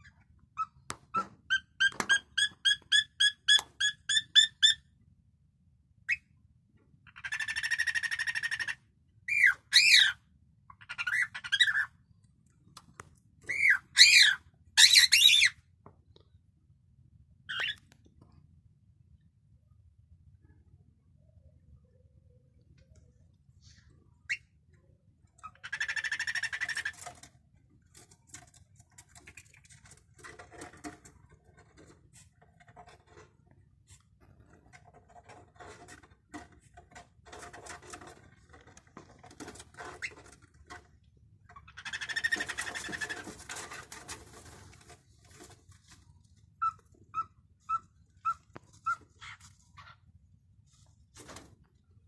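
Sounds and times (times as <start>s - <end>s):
cockatiel screeching: 7.2s - 10.2s, 13.5s - 15.6s.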